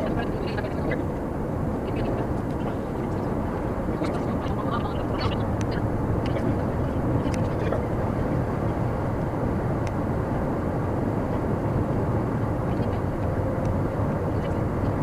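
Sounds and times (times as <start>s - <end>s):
car engine hum: 0.0s - 15.0s.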